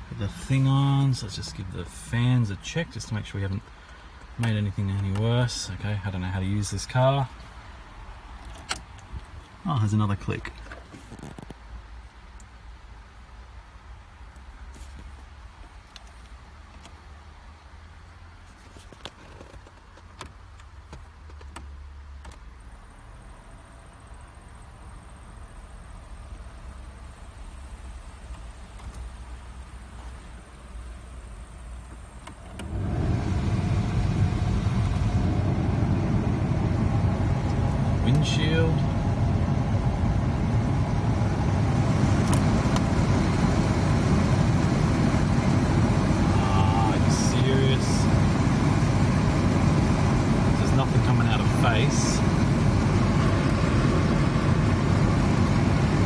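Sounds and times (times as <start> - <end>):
blower fan running: 0.0 - 9.9, 32.3 - 56.0
low steady hum: 0.0 - 11.0, 32.2 - 56.0
air rushing through vents: 32.4 - 56.0.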